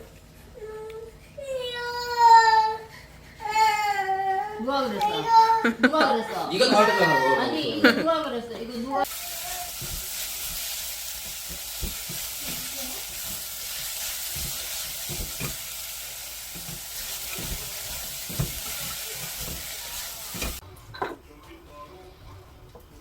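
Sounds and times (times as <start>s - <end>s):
food sizzling in a pan: 9.0s - 20.6s
spatula knocking against pan: 11.2s - 13.4s, 16.6s - 19.7s.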